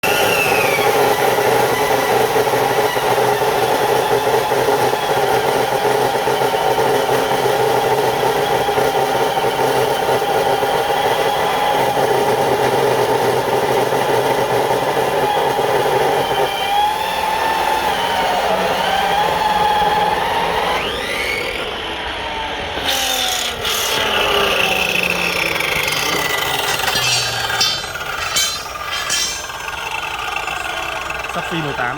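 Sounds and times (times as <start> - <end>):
metal cut-off saw whining: 22.8 - 31.6.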